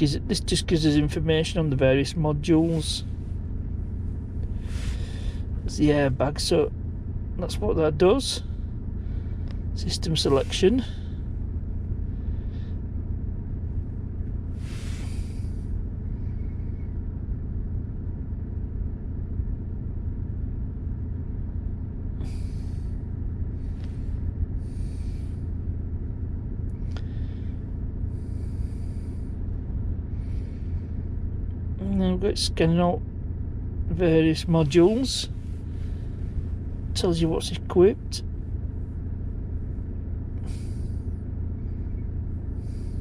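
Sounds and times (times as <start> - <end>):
car engine idling: 0.0 - 43.0
short breathy hisses: 14.6 - 15.6.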